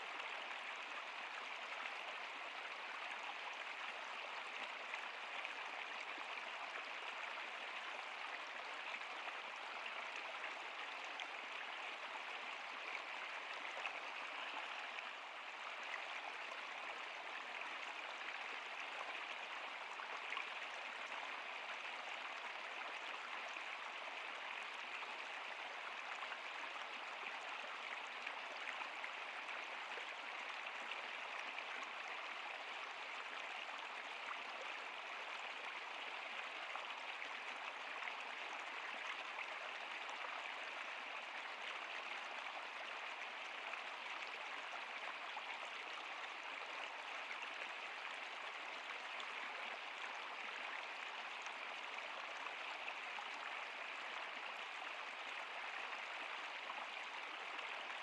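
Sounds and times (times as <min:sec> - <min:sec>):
stream flowing over rocks: 0:00.0 - 0:58.0.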